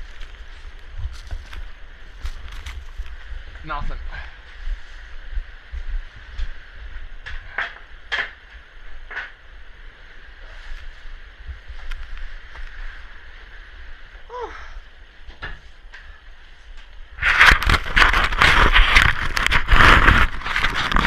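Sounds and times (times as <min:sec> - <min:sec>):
wind buffeting microphone: 0:00.0 - 0:15.2.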